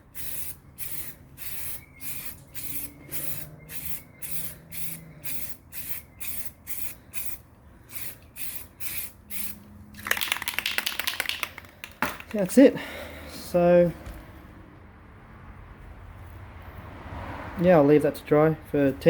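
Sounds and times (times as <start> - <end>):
spray paint can hissing: 0.0 - 11.6.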